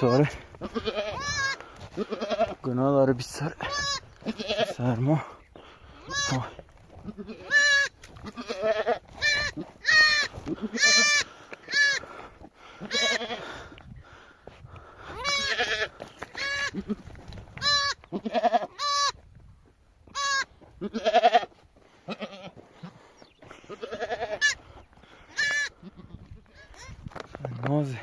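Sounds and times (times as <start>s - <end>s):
sheep bleating: 0.0s - 2.7s, 3.5s - 5.2s, 6.0s - 12.1s, 12.8s - 13.6s, 15.1s - 19.2s, 20.0s - 24.6s, 25.3s - 27.0s.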